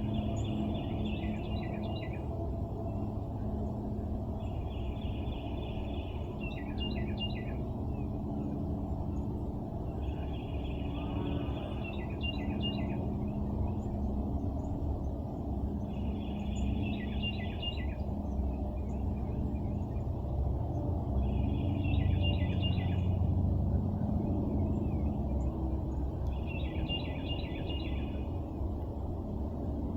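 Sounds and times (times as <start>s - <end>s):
songbird singing: 0.0s - 3.5s, 4.3s - 8.5s, 9.1s - 14.8s, 15.6s - 20.0s, 21.2s - 23.2s, 24.6s - 28.5s
distant traffic rumble: 0.0s - 29.9s.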